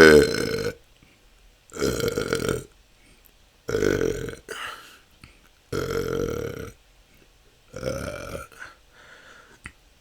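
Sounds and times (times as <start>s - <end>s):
person belching: 0.0s - 0.8s, 1.7s - 2.7s, 3.7s - 4.8s, 5.7s - 6.8s, 7.7s - 8.7s.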